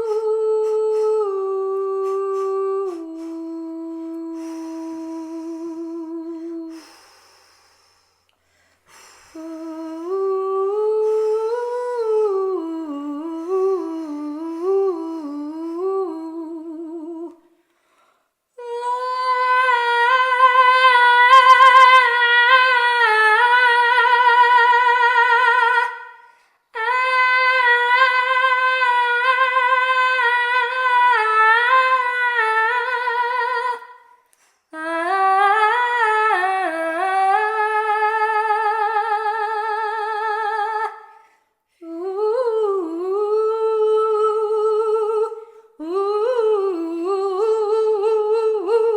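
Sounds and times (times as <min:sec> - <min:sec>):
person singing wordless chant: 0:00.0 - 0:06.8
breaths between phrases: 0:17.4 - 0:18.5, 0:26.0 - 0:26.7, 0:41.0 - 0:41.8.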